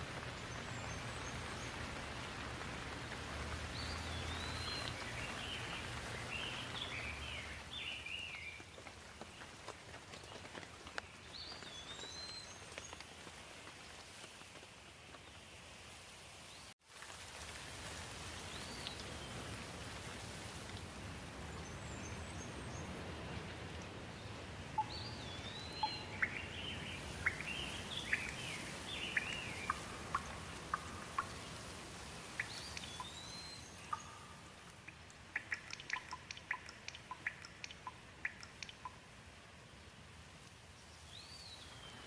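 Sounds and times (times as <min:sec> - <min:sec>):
steady rain: 0:00.0 - 0:42.0
birds calling: 0:03.7 - 0:08.6, 0:24.2 - 0:31.8, 0:32.4 - 0:39.0.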